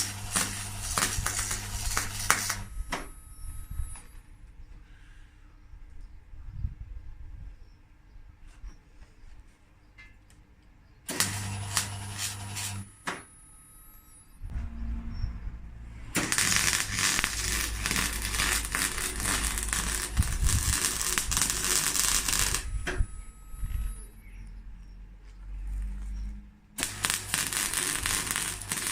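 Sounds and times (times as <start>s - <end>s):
welder crackling hiss on steel: 0.0s - 3.1s, 11.1s - 12.9s, 16.2s - 23.0s, 26.8s - 28.9s
low hum: 13.3s - 26.6s.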